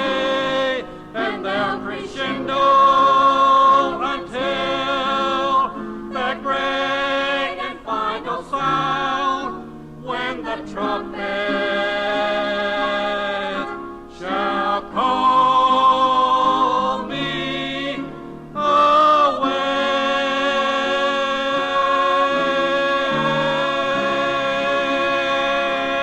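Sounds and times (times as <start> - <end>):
gospel vocal group singing: 0.0 - 26.0.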